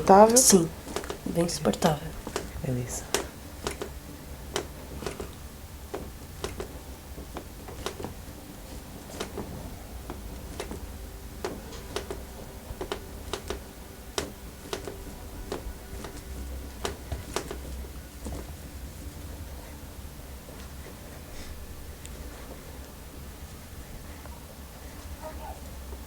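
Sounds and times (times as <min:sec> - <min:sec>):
light clicks and taps: 0:00.0 - 0:19.8
low steady hum: 0:00.0 - 0:26.0.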